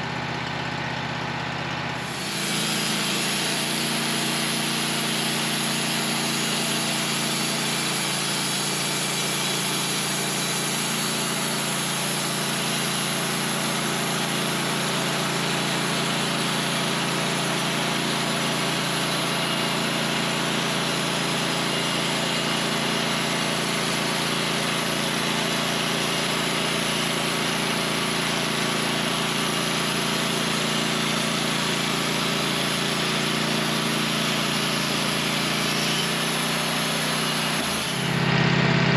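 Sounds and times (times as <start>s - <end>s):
sawmill engine running: 0.0s - 38.9s.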